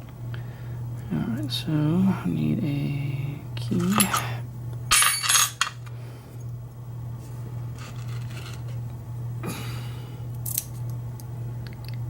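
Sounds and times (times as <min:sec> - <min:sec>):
steady low hum: 0:00.0 - 0:12.0
metal keys jingling: 0:03.7 - 0:04.3, 0:04.9 - 0:05.8
handling small metal lock parts: 0:07.8 - 0:08.6.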